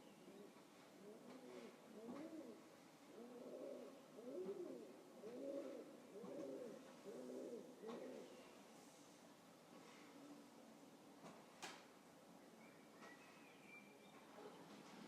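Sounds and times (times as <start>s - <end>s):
pigeon cooing: 0.2s - 8.5s.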